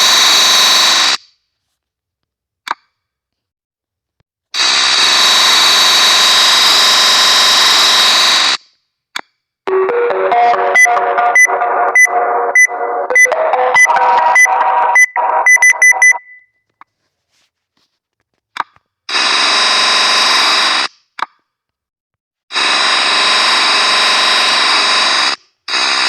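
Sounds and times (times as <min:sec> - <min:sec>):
quick high beeps: 0:09.7 - 0:16.5.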